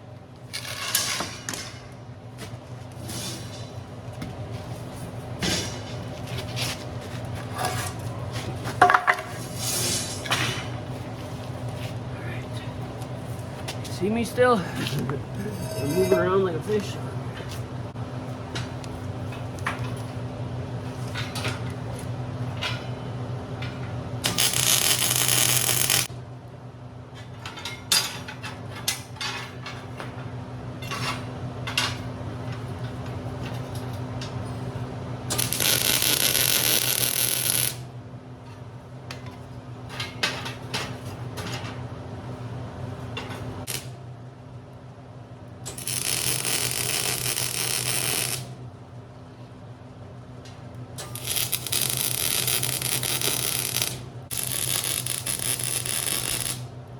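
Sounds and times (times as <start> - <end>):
electrical hum: 0.0 - 27.3, 28.6 - 56.9
arc welding crackling: 24.2 - 26.1, 35.3 - 37.9, 43.6 - 44.0, 45.7 - 48.6, 51.0 - 56.8.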